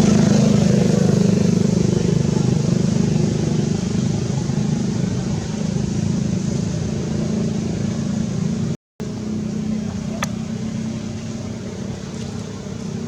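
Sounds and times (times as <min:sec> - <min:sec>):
engine running steadily: 0:00.0 - 0:13.0.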